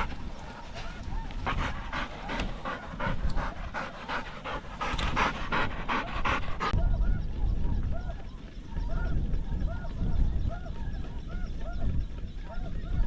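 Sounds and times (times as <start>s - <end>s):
dog panting: 0.0s - 6.8s.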